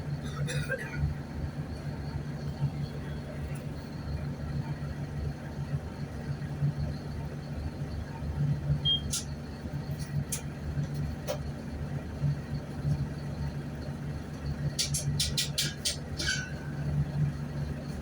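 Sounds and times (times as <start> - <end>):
diesel bus engine running: 0.0 - 18.0
high beep: 8.8 - 9.1.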